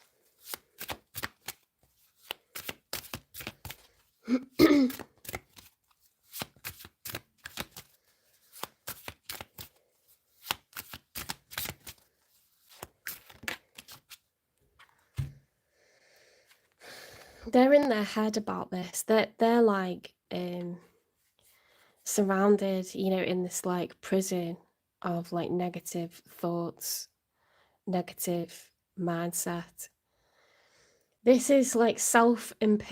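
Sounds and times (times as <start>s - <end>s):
cards being shuffled: 0.0s - 14.2s.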